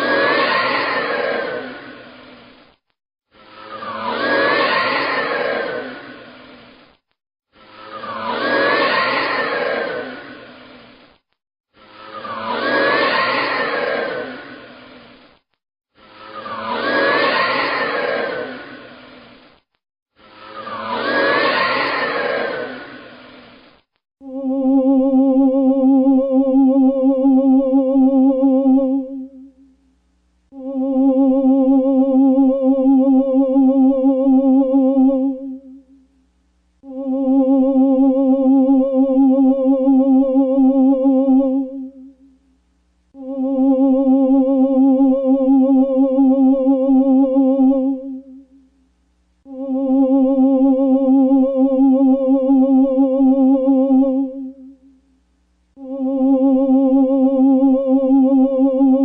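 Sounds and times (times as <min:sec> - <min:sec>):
wavering ghostly moaning hum: 0:00.0 - 0:02.0, 0:03.4 - 0:06.6, 0:07.6 - 0:10.5, 0:11.8 - 0:14.8, 0:16.0 - 0:19.0, 0:20.4 - 0:23.1.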